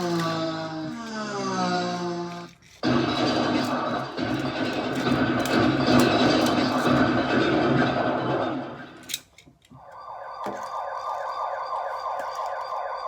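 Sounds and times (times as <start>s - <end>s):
siren yelping: 9.8s - 13.0s.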